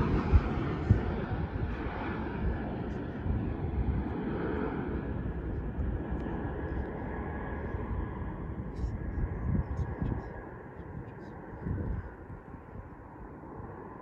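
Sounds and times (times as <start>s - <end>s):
jet engines roaring with whine: 0.0s - 14.0s.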